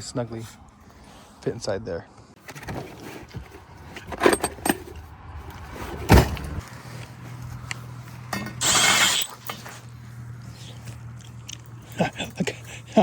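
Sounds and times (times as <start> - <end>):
tools and metal parts clicking: 3.9 - 5.0
power drill burst: 8.6 - 9.5.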